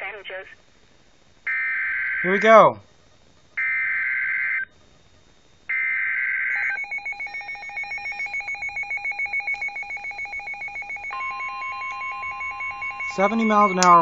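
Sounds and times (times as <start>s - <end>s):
steady warning alarm tone: 1.5s - 2.8s, 3.6s - 14.0s
fast electronic beeping: 6.6s - 14.0s.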